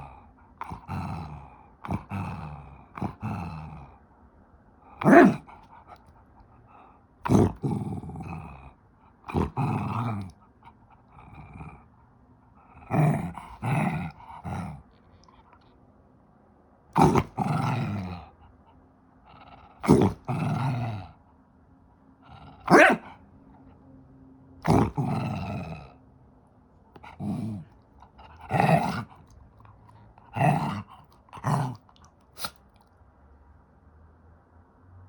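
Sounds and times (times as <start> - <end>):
dog barking and growling: 0.0 - 4.1, 4.8 - 15.7, 16.9 - 18.5, 19.2 - 21.2, 22.2 - 23.3, 24.6 - 26.0, 26.9 - 32.7.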